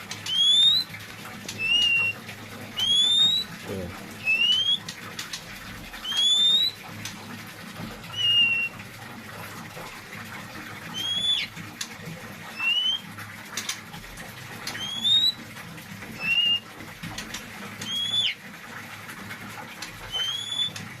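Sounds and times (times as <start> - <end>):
bird calling with rising whistles: 0.2 - 3.6, 4.2 - 4.9, 6.0 - 6.8, 8.1 - 8.8, 10.9 - 11.6, 12.5 - 13.1, 14.7 - 15.5, 16.2 - 16.7, 17.8 - 18.4, 20.0 - 20.9.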